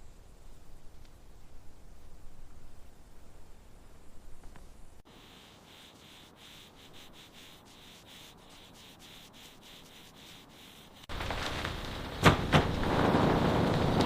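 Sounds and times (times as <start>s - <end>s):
sanding strokes: 5.0s - 11.1s.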